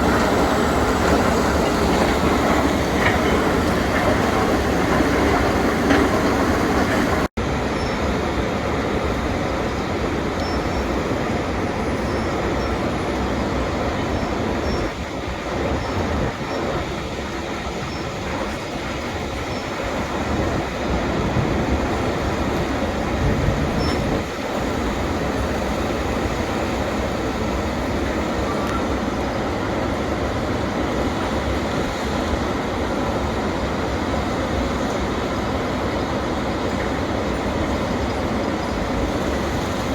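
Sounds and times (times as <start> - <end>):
excavator rumble and clatter: 0.0 - 39.9.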